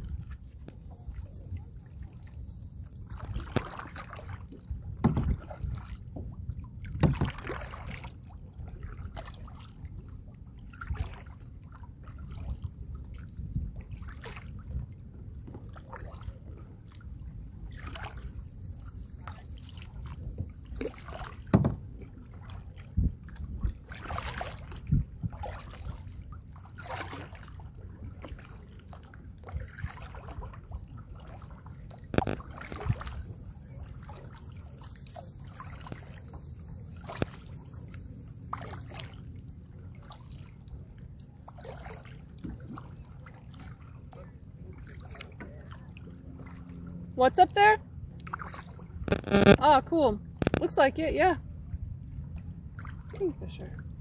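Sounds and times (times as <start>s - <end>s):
low rumble: 0.0s - 5.5s, 17.4s - 22.2s
paddle splashing in water: 0.0s - 46.9s, 48.2s - 50.7s, 52.4s - 53.7s.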